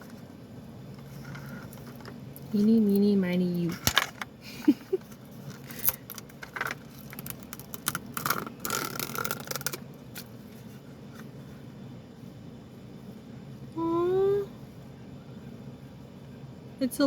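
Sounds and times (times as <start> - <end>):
plastic packaging crinkling and clicking: 5.4 - 10.3.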